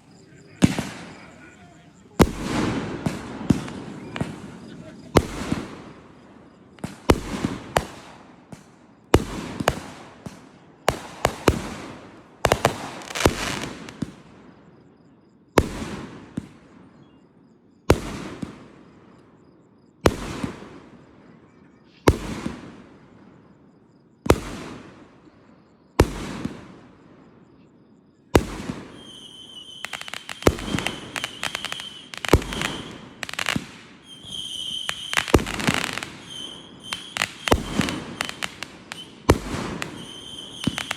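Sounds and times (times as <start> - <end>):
fireworks shells bursting: 28.6 - 40.9
high whistle: 28.9 - 33.0, 34.0 - 39.3, 39.9 - 40.9.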